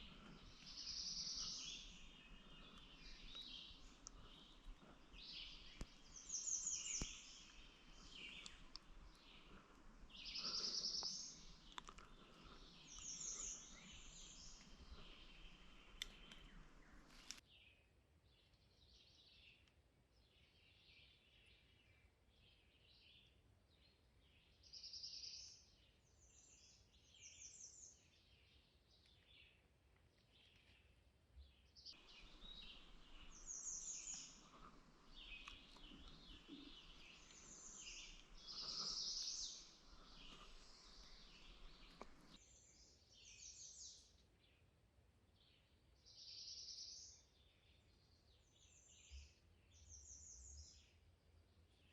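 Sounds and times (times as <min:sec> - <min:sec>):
songbirds singing: 0:00.0 - 0:51.9
soft clicks: 0:15.6 - 0:17.4, 0:41.4 - 0:42.4
faint background hiss: 0:31.9 - 0:43.9.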